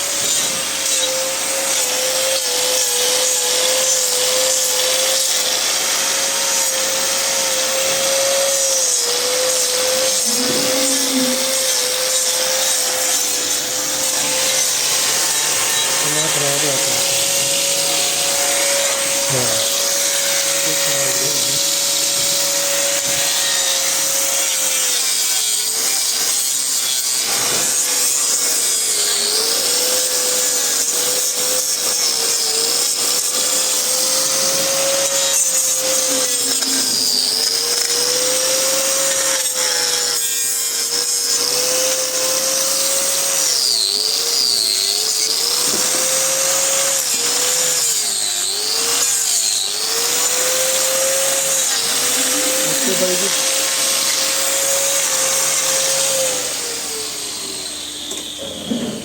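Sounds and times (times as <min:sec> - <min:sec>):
power grinder trimming hoof: 0:00.0 - 0:59.0.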